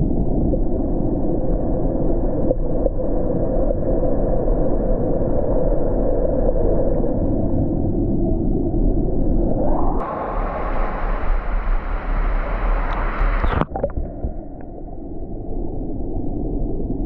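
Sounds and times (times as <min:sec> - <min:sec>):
muffled rushing noise: 0:09.2 - 0:14.9.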